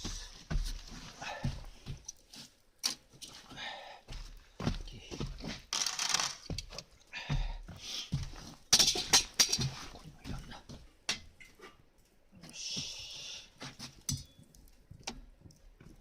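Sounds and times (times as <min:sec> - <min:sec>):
gear rustling and scraping: 0:05.5 - 0:07.0.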